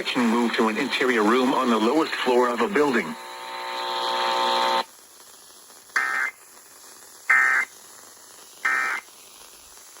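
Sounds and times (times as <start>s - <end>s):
harsh digital buzzes: 0.2s - 4.9s, 8.6s - 9.0s.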